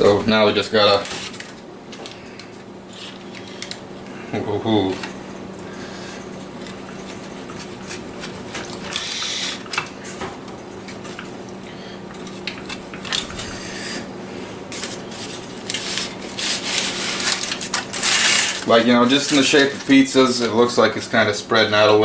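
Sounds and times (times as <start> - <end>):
steady low hum: 0.0 - 22.0
pizza cutter scraping: 14.7 - 20.4.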